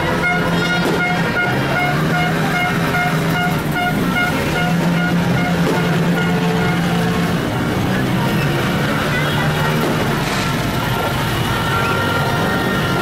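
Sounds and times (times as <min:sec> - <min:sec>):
multi-tone bus horn tune: 0:00.0 - 0:07.4, 0:11.3 - 0:13.0.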